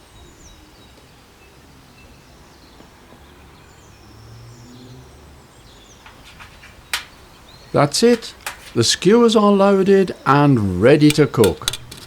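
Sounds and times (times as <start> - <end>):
faint bird chirps: 0.0 - 8.4
sharp click: 11.0 - 12.0.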